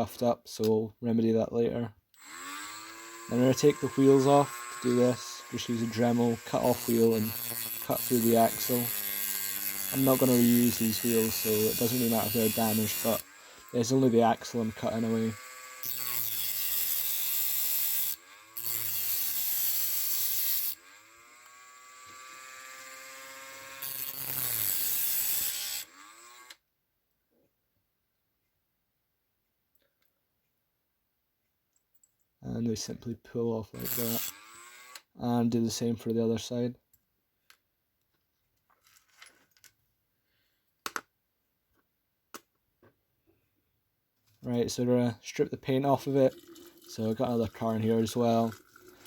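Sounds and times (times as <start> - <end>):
rotary tool grinding metal: 2.2 - 26.6, 33.7 - 35.1
rotary tool motor whine: 2.2 - 26.6, 33.8 - 35.1.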